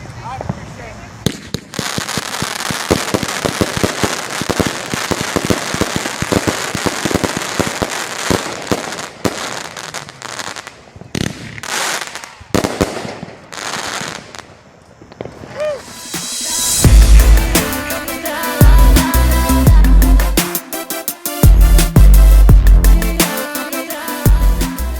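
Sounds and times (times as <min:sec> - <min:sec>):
fireworks barrage: 0:00.3 - 0:22.5.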